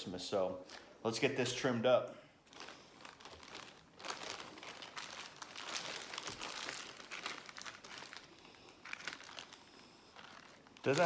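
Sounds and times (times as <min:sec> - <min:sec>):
plastic bag crinkling: 0:02.4 - 0:11.0.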